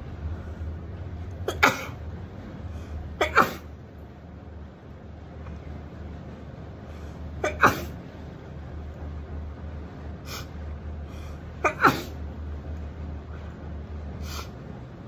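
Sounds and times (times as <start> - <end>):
woman sneezing: 11.6 - 12.2.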